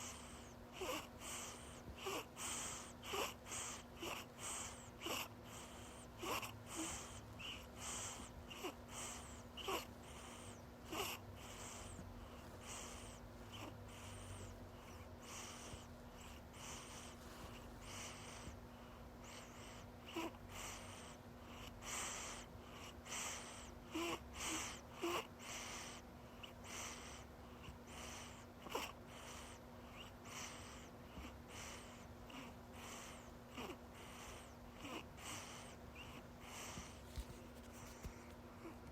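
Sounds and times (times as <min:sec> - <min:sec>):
child breathing noisily: 0:00.0 - 0:27.3
steady low hum: 0:00.0 - 0:38.9.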